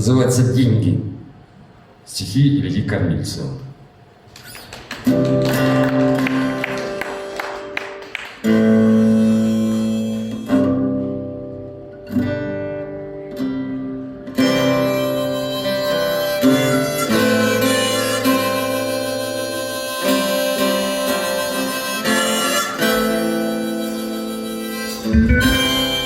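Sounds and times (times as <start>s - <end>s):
guitar chords ringing: 8.4s - 26.0s.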